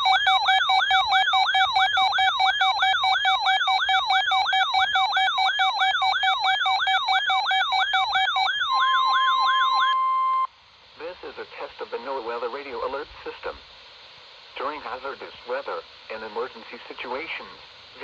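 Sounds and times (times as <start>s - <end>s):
rapid steady beeping: 0.0s - 10.5s
rising siren-like sweep: 0.0s - 10.5s
steady single alarm tone: 0.0s - 10.5s.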